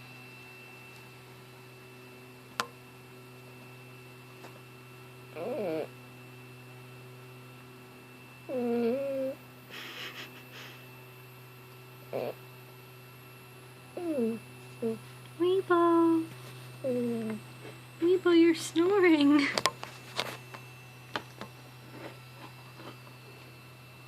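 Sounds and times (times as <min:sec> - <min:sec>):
cat snoring: 0:05.4 - 0:05.9, 0:08.5 - 0:09.4, 0:12.1 - 0:12.4, 0:14.0 - 0:15.0
cat squeaky moans: 0:05.4 - 0:05.9, 0:08.5 - 0:09.4, 0:12.1 - 0:12.4.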